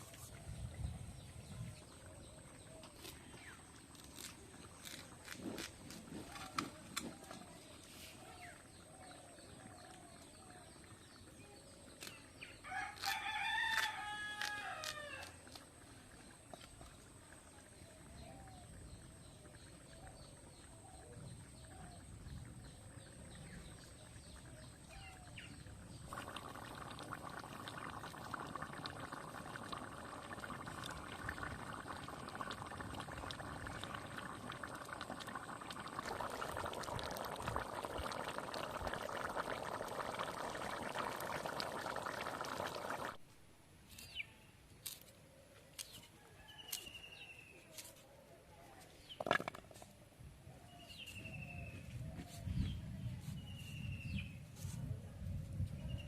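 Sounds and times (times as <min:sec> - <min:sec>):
rooster crowing: 0:12.7 - 0:15.4
hiss of pot boiling: 0:21.7 - 0:43.2.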